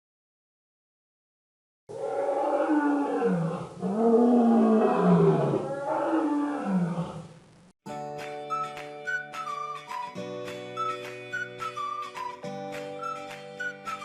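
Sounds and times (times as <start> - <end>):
dinosaur roars: 1.9 - 7.3
music: 7.8 - 14.0.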